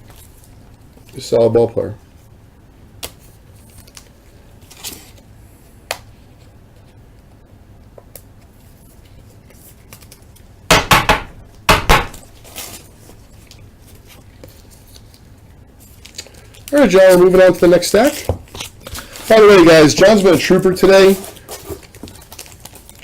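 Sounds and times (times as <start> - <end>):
cards and packaging rustling: 3.0 - 5.3, 8.1 - 10.6, 12.2 - 23.0.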